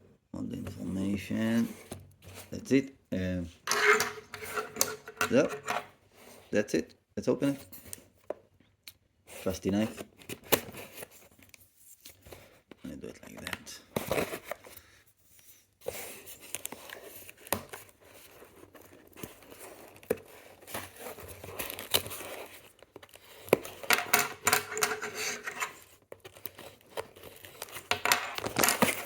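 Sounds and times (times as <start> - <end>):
packaging crinkling: 16.3 - 23.9, 25.8 - 29.0.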